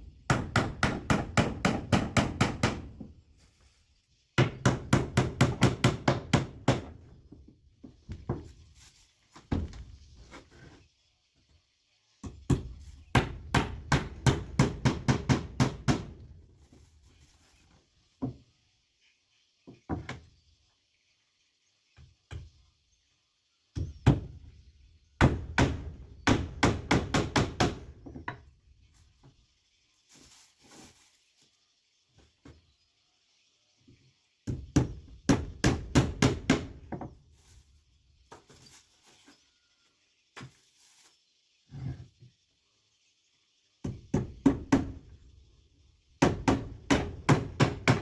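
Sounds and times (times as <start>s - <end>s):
hammer striking wood: 0.3s - 3.0s, 13.2s - 16.2s, 25.2s - 27.9s, 46.2s - 48.0s.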